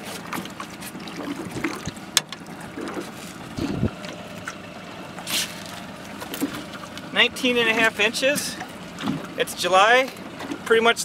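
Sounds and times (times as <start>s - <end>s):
wind on microphone: 3.6s - 4.0s.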